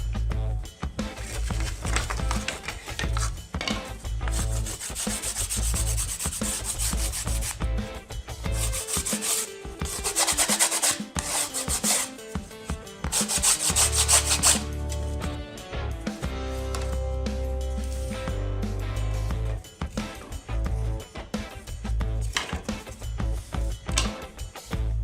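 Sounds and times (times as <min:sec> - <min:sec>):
background music: 0:00.0 - 0:25.0
hand sanding wood: 0:01.2 - 0:03.3, 0:04.2 - 0:07.6, 0:08.5 - 0:12.2, 0:13.1 - 0:14.7.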